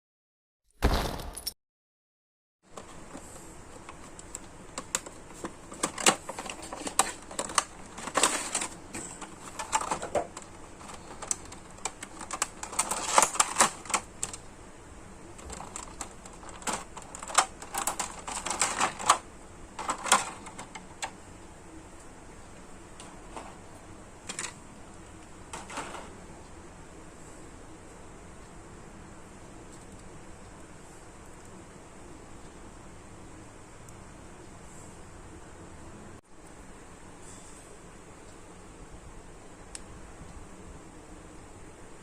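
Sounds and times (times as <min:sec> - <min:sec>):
plastic parts clicking and tapping: 0:02.7 - 0:14.5, 0:15.4 - 0:19.2, 0:19.8 - 0:21.2, 0:24.2 - 0:24.6.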